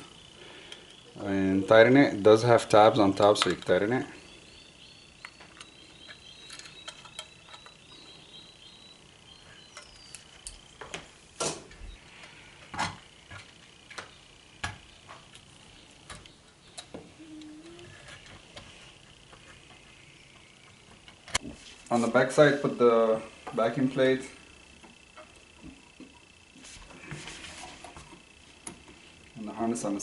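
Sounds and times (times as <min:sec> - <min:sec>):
faint high chirping: 0:03.8 - 0:10.9, 0:14.0 - 0:21.0.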